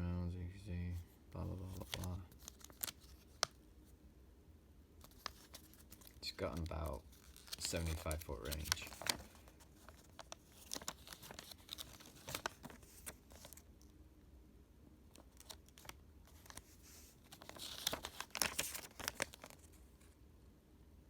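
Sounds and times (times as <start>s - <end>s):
paper and packaging crinkling: 1.4s - 3.6s, 5.0s - 13.7s, 15.1s - 20.0s.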